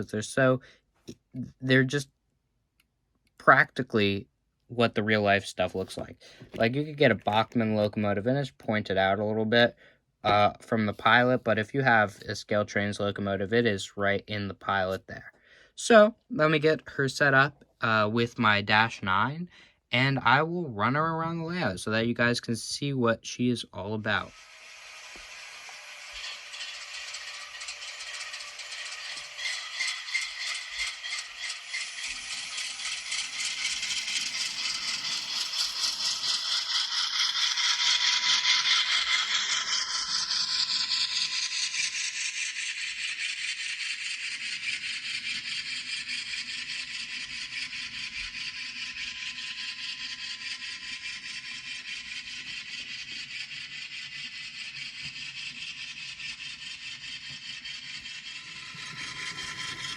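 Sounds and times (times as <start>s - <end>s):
model train wheels clicking on rails: 24.0s - 59.9s
faint motor whine: 24.1s - 55.2s, 57.3s - 59.9s.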